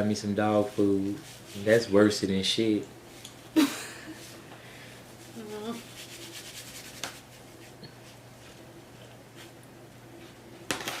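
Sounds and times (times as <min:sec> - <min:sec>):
napkin rubbing on face: 0:00.6 - 0:01.9, 0:05.1 - 0:09.6.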